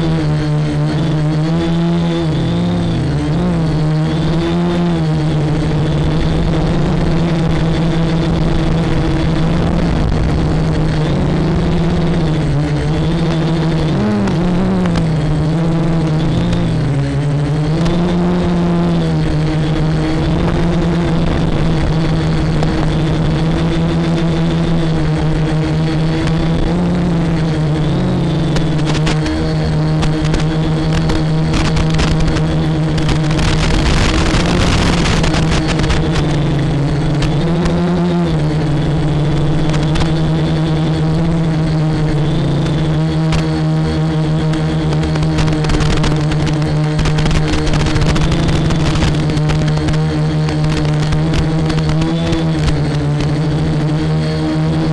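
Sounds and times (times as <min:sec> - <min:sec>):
quadcopter motors whining: 0:00.0 - 0:54.9
crackling clicks: 0:13.3 - 0:15.3, 0:28.3 - 0:37.8, 0:39.6 - 0:40.6, 0:42.4 - 0:43.6, 0:44.4 - 0:53.5.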